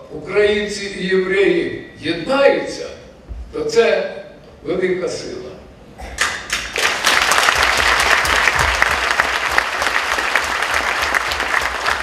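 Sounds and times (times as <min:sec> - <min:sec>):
audience applauding: 0:06.2 - 0:12.0.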